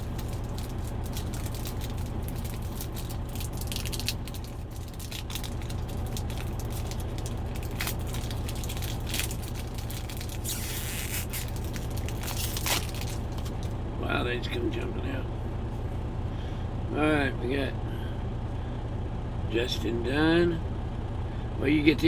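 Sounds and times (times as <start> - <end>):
foil wrapper crinkling: 0.0 - 13.8
steady low hum: 0.0 - 22.0.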